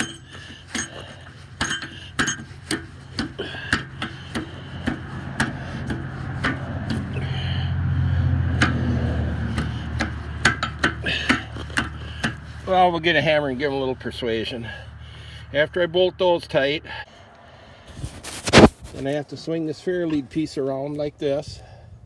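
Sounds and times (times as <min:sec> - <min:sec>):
metallic clinks and knocks: 0:00.0 - 0:02.8.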